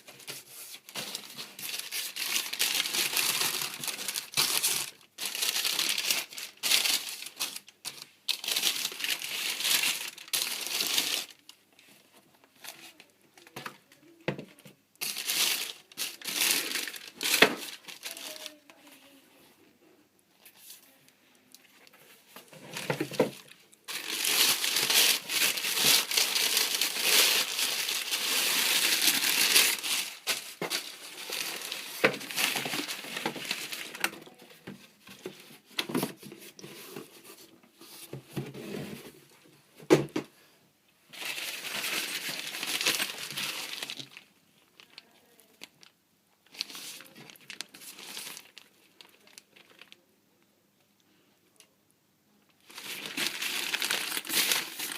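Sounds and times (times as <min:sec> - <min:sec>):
paper packaging crumpling: 0:00.0 - 0:11.6, 0:15.0 - 0:18.7, 0:22.3 - 0:37.1, 0:41.1 - 0:50.0, 0:52.6 - 0:54.9.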